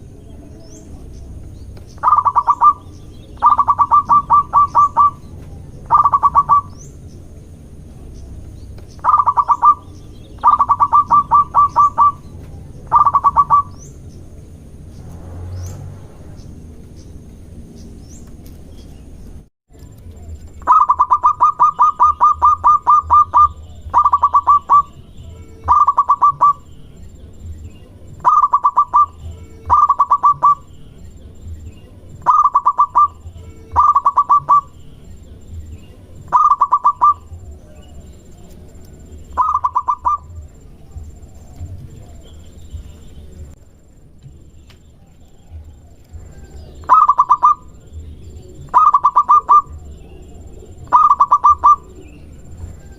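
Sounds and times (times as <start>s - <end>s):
dove cooing: 2.0s - 7.0s, 9.0s - 13.9s, 20.2s - 25.0s, 25.6s - 26.7s, 28.0s - 30.8s, 31.8s - 34.8s, 35.6s - 42.9s, 45.4s - 52.9s.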